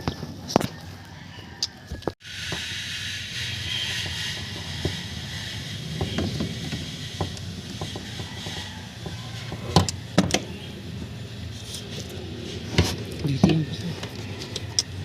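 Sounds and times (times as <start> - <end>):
car parts clicking and knocking: 3.9 - 15.0.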